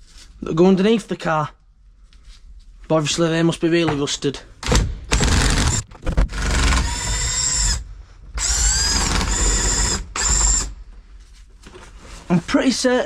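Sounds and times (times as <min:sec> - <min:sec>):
power drill whining: 0:05.1 - 0:07.8, 0:08.4 - 0:10.8.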